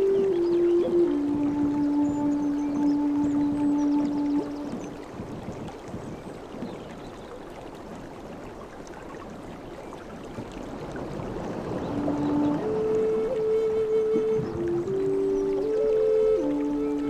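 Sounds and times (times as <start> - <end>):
flute note: 0.0 - 4.9, 11.6 - 17.0
sea waves washing: 0.0 - 17.0.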